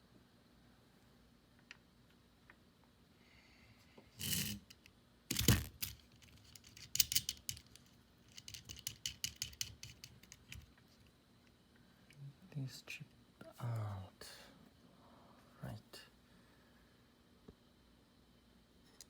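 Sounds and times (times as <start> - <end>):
hand tools scraping: 4.2 - 4.6
hand tools clicking and rattling: 5.3 - 10.6.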